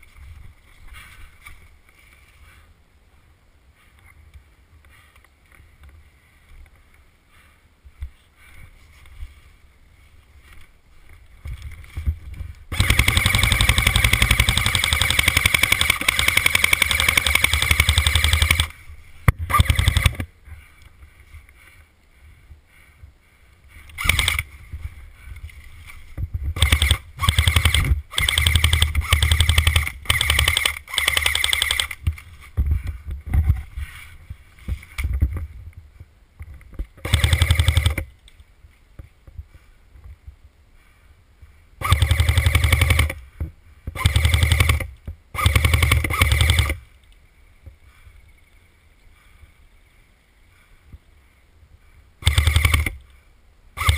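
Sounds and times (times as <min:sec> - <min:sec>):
airsoft machine gun firing bursts: 0:12.7 - 0:18.8, 0:19.5 - 0:20.3, 0:24.0 - 0:24.5, 0:26.6 - 0:32.0, 0:37.0 - 0:38.1, 0:41.8 - 0:43.2, 0:44.0 - 0:46.9, 0:52.2 - 0:53.0.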